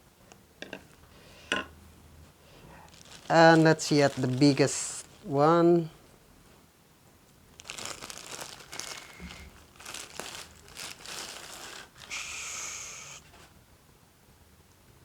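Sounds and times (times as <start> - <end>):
plastic packaging crinkling: 2.7 - 5.9, 7.5 - 12.3.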